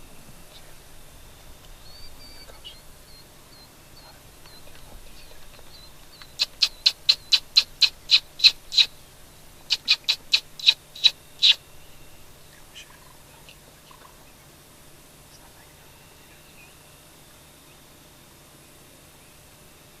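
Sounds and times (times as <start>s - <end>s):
high-pitched lip squeaks: 5.8s - 8.9s, 9.7s - 11.6s.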